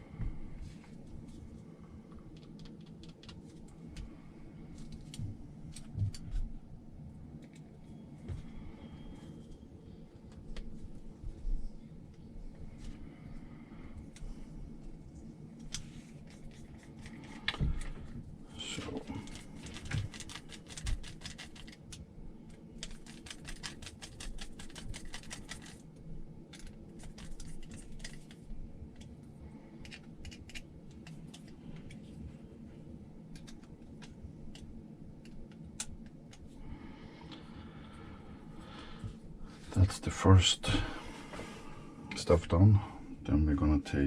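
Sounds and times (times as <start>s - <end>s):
rapid clicking: 19.2s - 22.0s, 22.8s - 25.8s
small parts and tools clicking: 19.2s - 25.8s.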